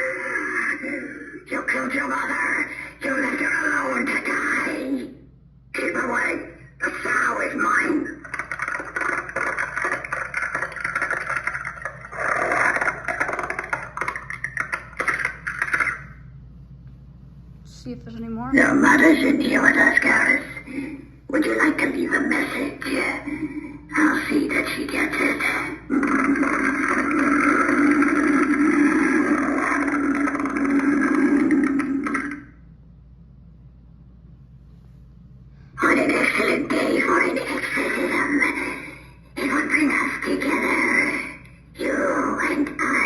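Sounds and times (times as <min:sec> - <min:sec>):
animatronic speaking: 0:00.0 - 0:16.3, 0:18.4 - 0:32.6, 0:35.8 - 0:43.0
raspy rumbling animatronic: 0:00.0 - 0:16.3, 0:18.6 - 0:32.8, 0:35.6 - 0:43.0
rapid clattering clicks: 0:08.2 - 0:16.1
harsh gritty noise: 0:24.9 - 0:32.6.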